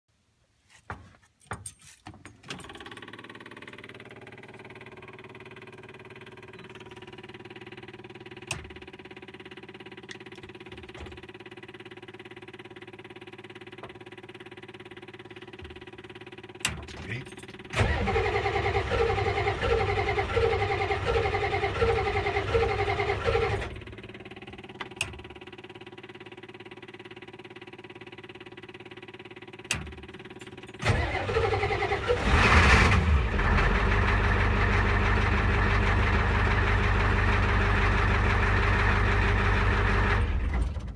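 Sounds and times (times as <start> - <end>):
diesel engine cranking: 2.3 - 25.9, 29.6 - 40.9
diesel engine idling: 3.0 - 16.6, 17.5 - 40.9.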